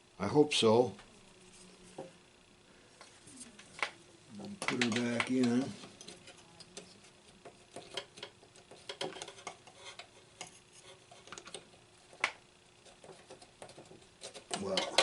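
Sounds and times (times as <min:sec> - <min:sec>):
small parts clicking and tapping: 0:03.8 - 0:15.0.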